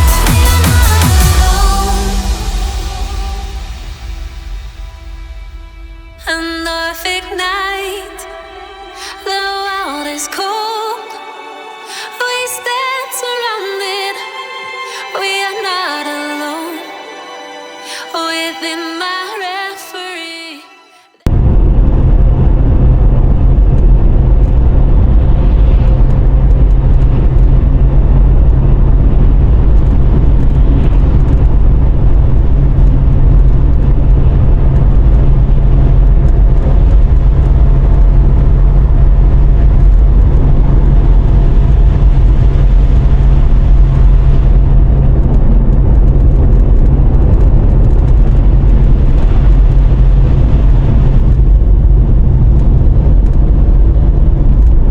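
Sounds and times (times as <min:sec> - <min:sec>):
car tyre and engine rumble: 0:21.3 - 0:54.9.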